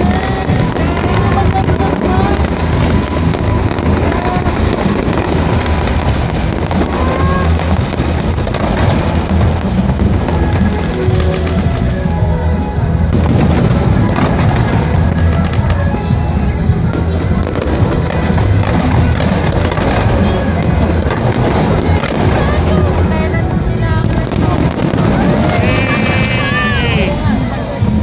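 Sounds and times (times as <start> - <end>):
fireworks crackling: 0.0 - 28.0
loud music with heavy beat: 24.6 - 27.4.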